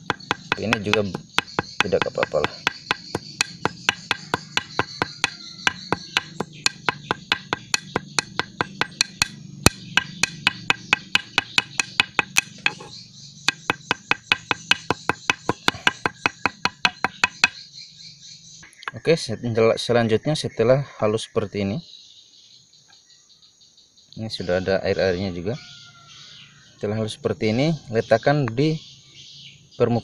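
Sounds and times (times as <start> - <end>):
leaves being pounded: 0.0 - 12.9, 13.5 - 17.6.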